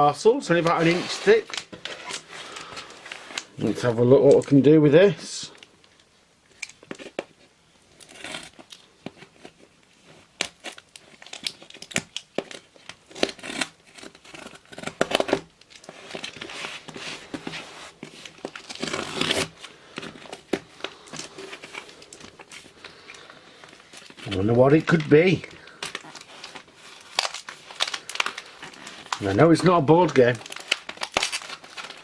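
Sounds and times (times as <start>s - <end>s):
packaging tearing and crinkling: 0.5s - 4.6s, 10.2s - 32.0s.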